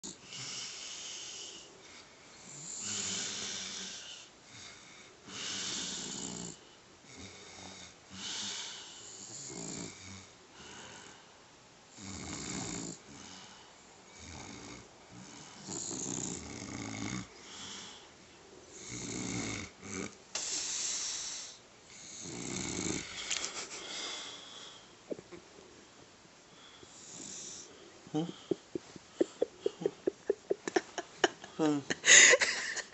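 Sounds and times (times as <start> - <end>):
puppy snoring: 2.4 - 10.3, 12.0 - 13.4, 14.1 - 18.0, 18.7 - 23.2, 27.0 - 30.6
man snoring: 2.5 - 4.3, 5.3 - 10.3, 12.0 - 13.4, 14.2 - 18.0, 18.8 - 20.2, 22.0 - 23.1.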